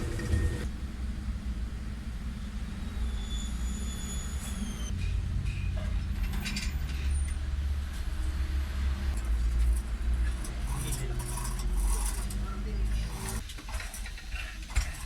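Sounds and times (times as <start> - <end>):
low vehicle rumble: 0.0 - 13.4.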